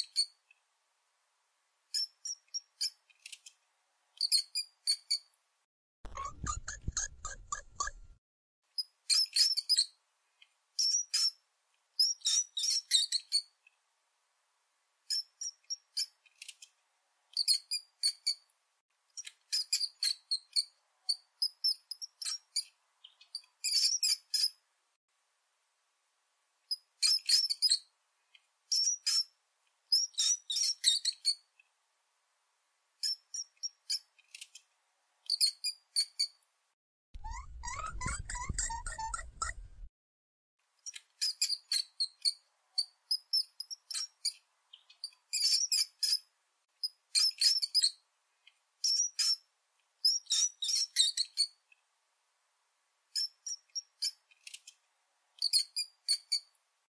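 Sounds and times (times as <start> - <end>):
mouse squeaking: 0.0 - 0.4, 1.9 - 3.5, 4.2 - 5.3, 6.1 - 8.2, 8.8 - 10.0, 10.8 - 11.4, 12.0 - 13.6, 15.1 - 16.6, 17.3 - 18.5, 19.2 - 24.6, 26.7 - 27.9, 28.7 - 31.5, 33.0 - 34.5, 35.3 - 36.4, 37.2 - 39.9, 40.8 - 48.0, 48.8 - 51.6, 53.1 - 54.7, 55.4 - 56.5.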